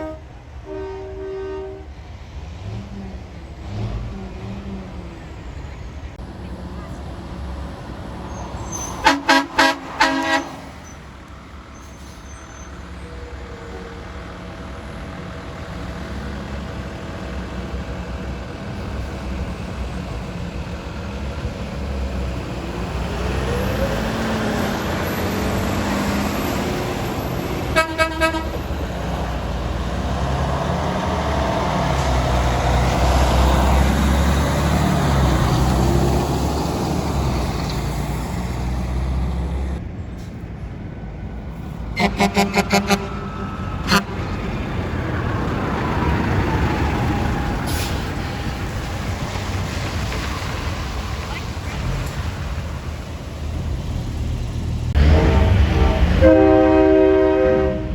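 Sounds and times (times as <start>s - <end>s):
truck horn blasts: 0.0s - 2.0s, 8.7s - 11.0s, 27.5s - 28.8s, 42.0s - 44.4s, 55.0s - 57.9s
truck engine and traffic rumble: 0.0s - 57.9s.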